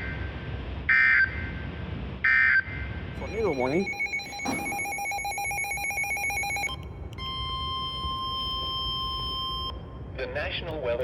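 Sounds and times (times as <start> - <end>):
steady alert tone: 3.2 - 6.8.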